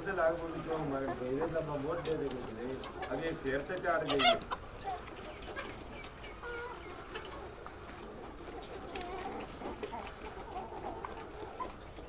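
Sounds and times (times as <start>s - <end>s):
chickens clucking: 0.0s - 12.0s.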